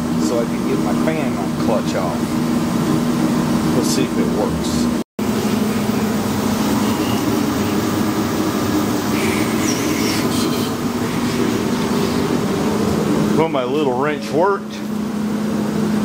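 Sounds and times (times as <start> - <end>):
mechanical hum: 0.0 - 16.0.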